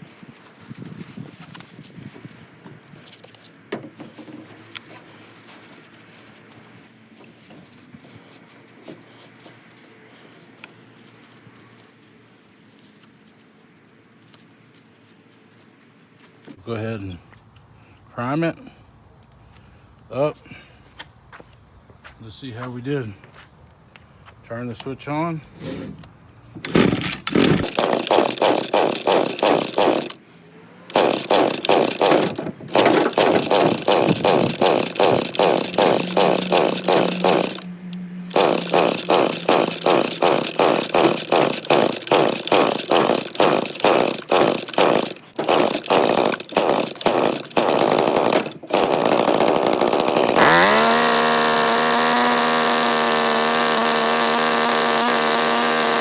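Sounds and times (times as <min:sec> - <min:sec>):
string trimmer engine starting: 0:25.6 - 0:56.0.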